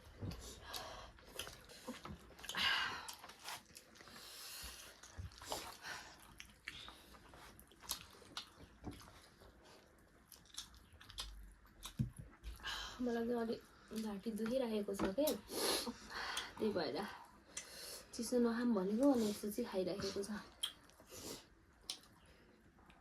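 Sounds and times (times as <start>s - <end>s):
chewing and crunching: 0.0s - 12.6s.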